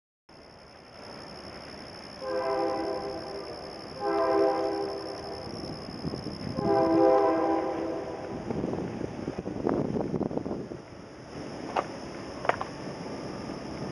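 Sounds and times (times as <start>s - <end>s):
train horn blasts: 2.2s - 5.2s, 6.5s - 8.4s.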